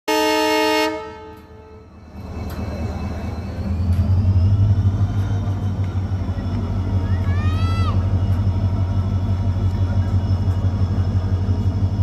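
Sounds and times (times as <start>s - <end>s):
locomotive horn blast: 0.1s - 1.9s
diesel engine humming: 0.1s - 12.0s.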